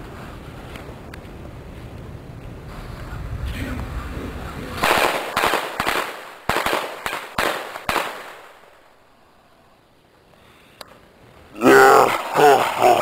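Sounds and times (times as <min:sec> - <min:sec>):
low rumbling noise: 0:00.0 - 0:06.5
firecrackers banging: 0:02.6 - 0:09.0.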